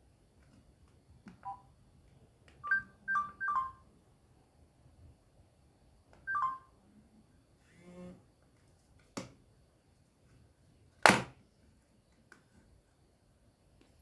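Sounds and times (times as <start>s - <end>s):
phone keypad beeps: 1.4s - 1.7s, 2.6s - 3.8s, 6.3s - 6.7s.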